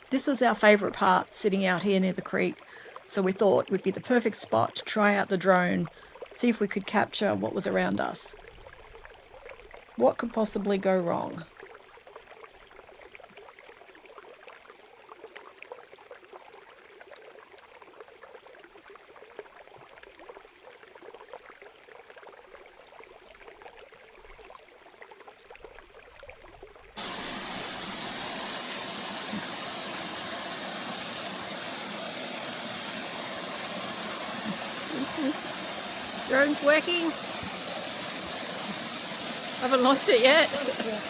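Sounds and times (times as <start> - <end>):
creek water running: 0.0 - 41.0
stream water rushing: 27.0 - 41.0.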